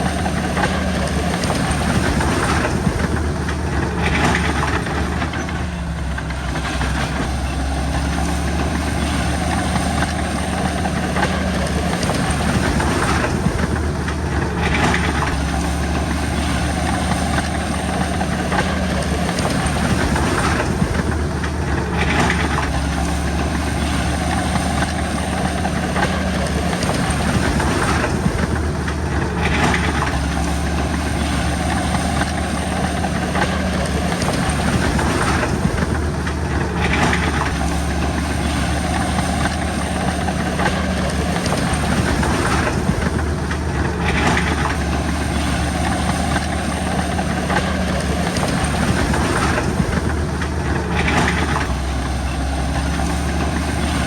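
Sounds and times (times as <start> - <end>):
bulldozer diesel engine running: 0.0 - 54.0.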